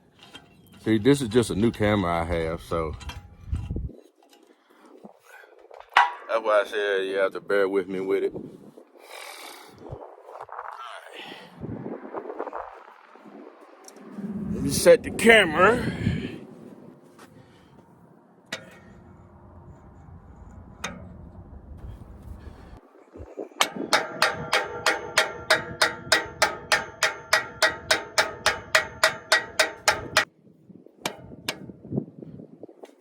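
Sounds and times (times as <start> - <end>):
hammer beating on ringing metal: 23.6 - 30.3.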